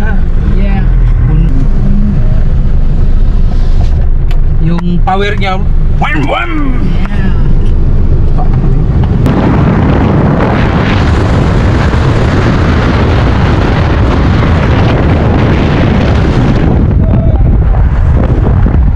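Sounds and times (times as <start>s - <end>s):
pickup engine roaring: 0.0s - 18.9s
wind noise: 6.8s - 18.9s.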